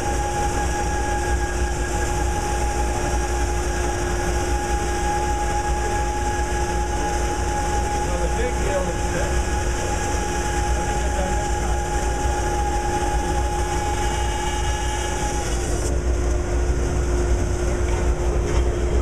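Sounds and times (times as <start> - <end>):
high tone: 0.0 - 15.6
machine hum: 0.0 - 19.0.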